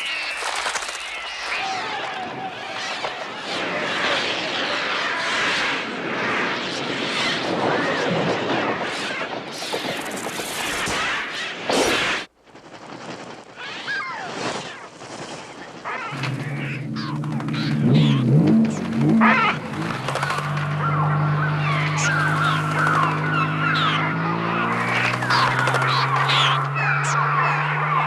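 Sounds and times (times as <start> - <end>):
flock of birds chattering: 15.5 - 28.0.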